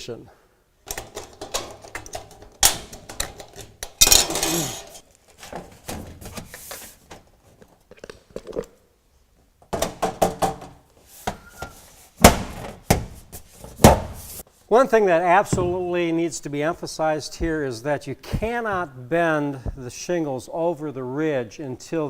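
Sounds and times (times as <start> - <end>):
metal scraping rasp: 4.1 - 5.0.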